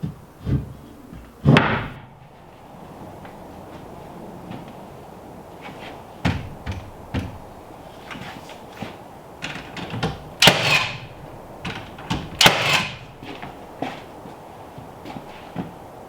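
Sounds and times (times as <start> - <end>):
loud noisy carpentry sounds: 5.6 - 14.1
knocks and taps on wood: 6.2 - 7.5.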